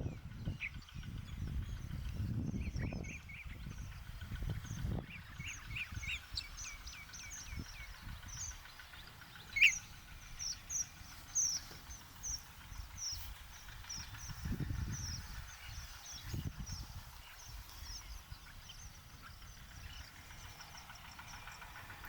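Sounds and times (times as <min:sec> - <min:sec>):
birds chirping: 0:00.0 - 0:22.0
loud bird call: 0:05.2 - 0:21.9.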